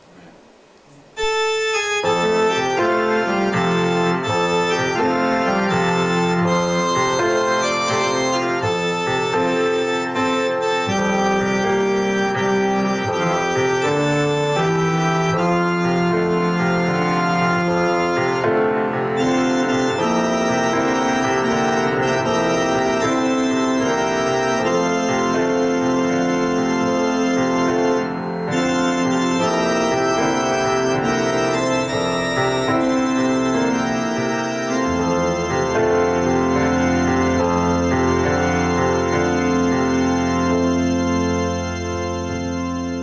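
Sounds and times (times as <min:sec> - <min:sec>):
organ playing sustained chords: 0:01.0 - 0:43.0.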